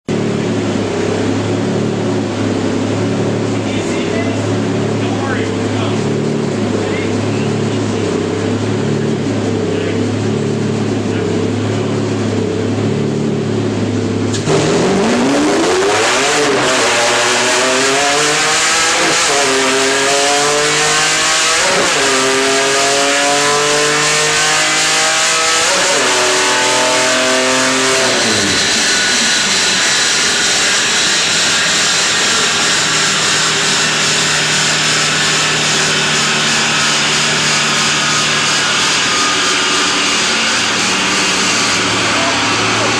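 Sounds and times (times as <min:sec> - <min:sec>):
car engine idling: 0:00.0 - 0:15.4, 0:27.4 - 0:42.9
car engine revving: 0:00.0 - 0:42.9.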